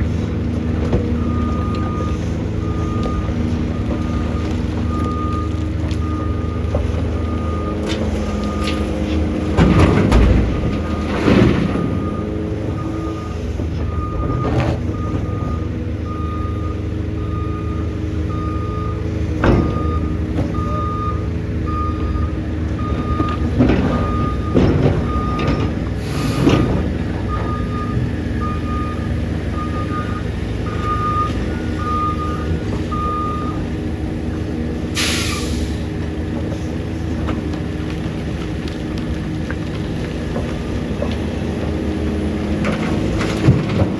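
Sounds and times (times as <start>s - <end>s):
diesel engine running: 0.0s - 43.9s
truck reversing alarm beeps: 0.0s - 43.9s
air brake hiss: 26.0s - 26.7s, 35.0s - 35.9s.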